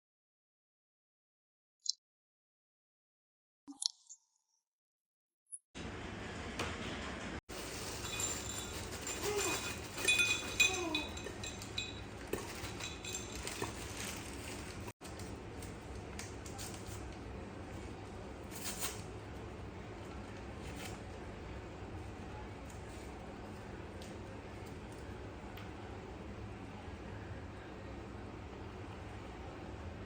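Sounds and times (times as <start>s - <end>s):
glassware clinking: 8.0s - 14.0s.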